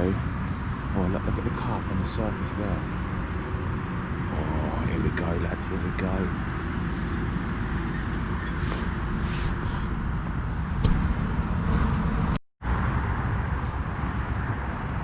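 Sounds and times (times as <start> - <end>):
outdoor background rumble: 0.0 - 15.0.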